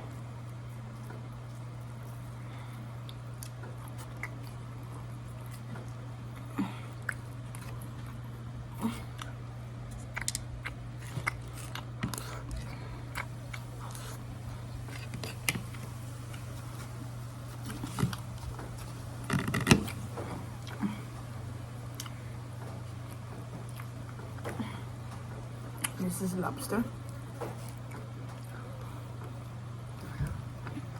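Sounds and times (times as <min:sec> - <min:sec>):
steady low hum: 0:00.0 - 0:30.9
crab shell cracking: 0:09.0 - 0:14.0.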